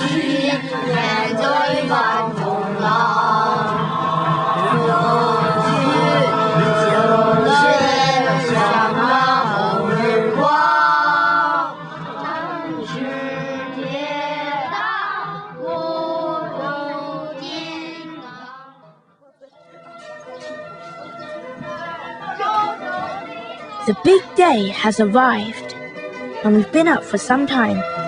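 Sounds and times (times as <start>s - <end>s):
group of voices singing: 0.0s - 19.0s, 21.7s - 24.3s
instrumental backing: 0.0s - 28.0s.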